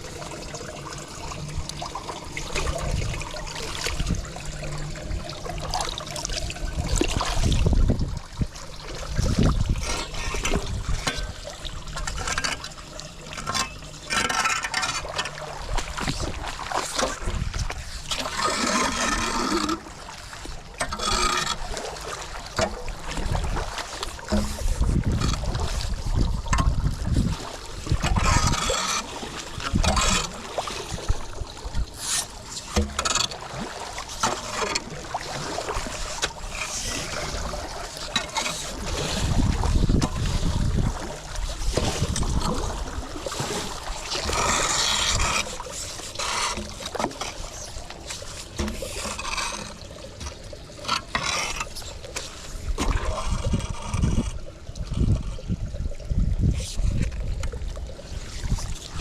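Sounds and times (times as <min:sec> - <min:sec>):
floodwater moving around drain: 0:00.0 - 0:59.0
wind buffeting microphone: 0:02.6 - 0:05.3, 0:06.4 - 0:11.4, 0:24.4 - 0:28.7, 0:38.8 - 0:43.1, 0:52.6 - 0:59.0.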